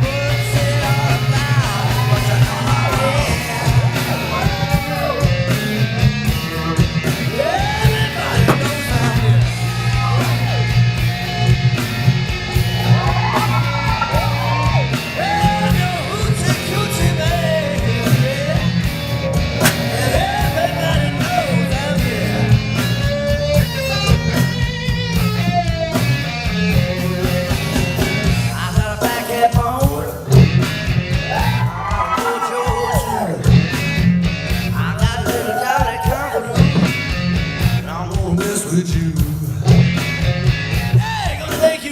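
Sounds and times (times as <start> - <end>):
guitar-led rock backing: 0.0 - 41.9.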